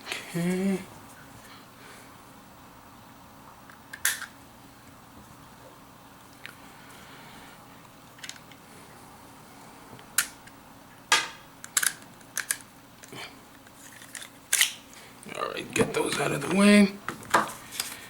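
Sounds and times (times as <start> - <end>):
pistol parts clicking: 3.9 - 4.3, 11.6 - 13.1, 14.0 - 14.8.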